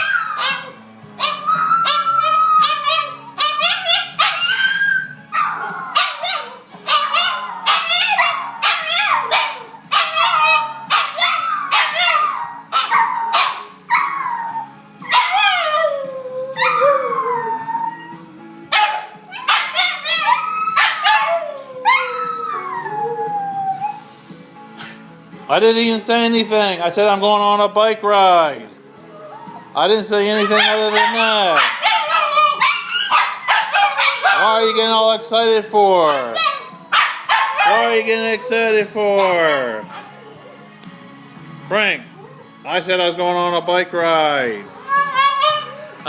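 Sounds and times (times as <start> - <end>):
dogs whining howls: 0.0 - 24.0, 29.0 - 35.2, 35.9 - 40.3, 44.8 - 46.0
dogs yapping and barking: 0.0 - 24.0, 29.0 - 35.2, 35.9 - 38.6, 39.2 - 40.3, 44.8 - 46.0.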